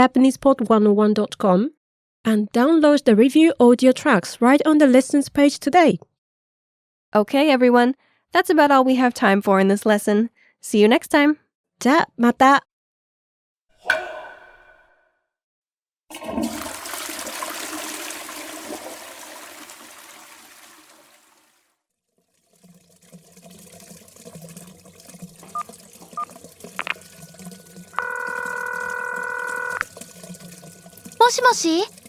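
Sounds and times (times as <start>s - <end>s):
water running with low hum: 16.1s - 21.6s, 22.2s - 32.0s
toilet flushing: 16.1s - 32.0s
phone keypad beeps: 25.5s - 30.4s
phone ringing tone: 25.5s - 31.9s.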